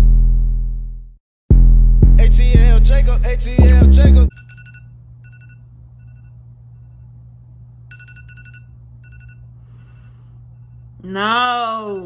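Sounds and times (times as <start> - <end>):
steady low hum: 4.3 - 12.0.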